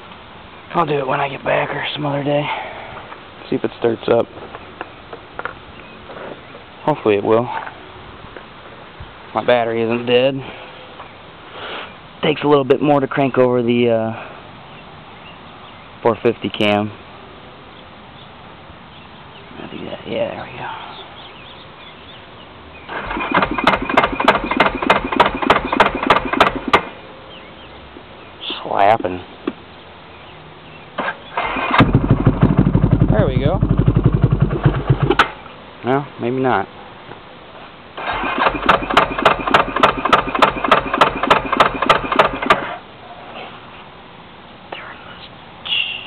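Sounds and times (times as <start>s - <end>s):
engine cranking without firing: 22.9s - 26.8s, 31.0s - 35.4s, 38.0s - 42.8s.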